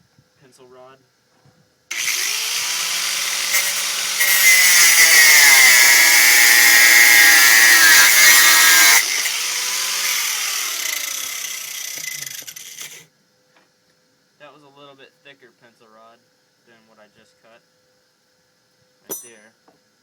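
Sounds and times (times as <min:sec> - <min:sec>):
angle grinder cutting steel: 0:01.9 - 0:13.0.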